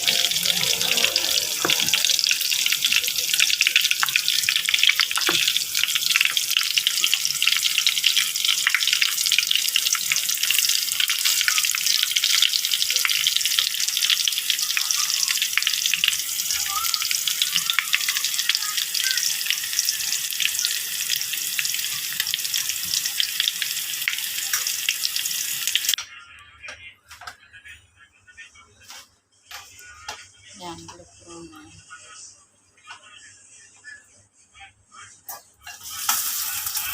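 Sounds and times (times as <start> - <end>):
meat sizzling in a pan: 0.0 - 26.0, 35.7 - 36.9.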